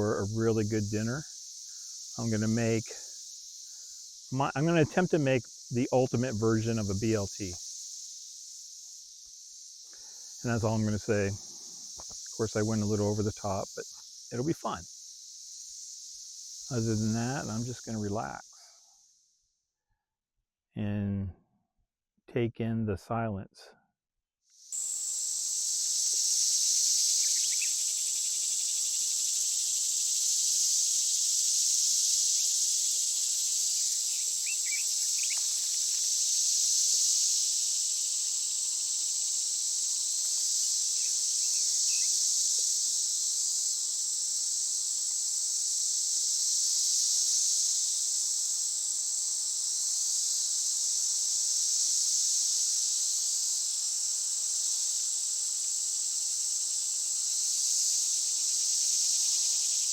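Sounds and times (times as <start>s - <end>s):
insects buzzing: 0.0s - 19.6s, 24.5s - 59.9s
faint bird chirps: 27.1s - 28.4s, 33.8s - 35.6s, 41.0s - 42.2s.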